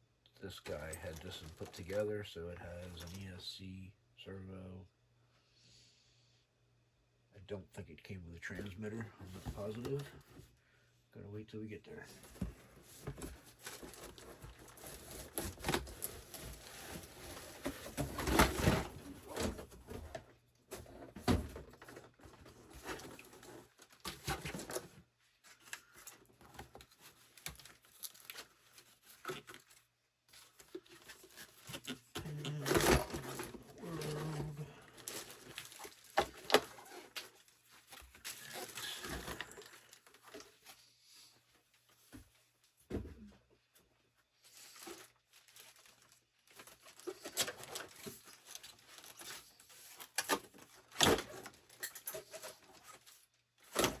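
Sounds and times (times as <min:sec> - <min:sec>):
packaging rustling and tearing: 0:13.2 - 0:19.6, 0:25.5 - 0:40.5, 0:44.5 - 0:54.0.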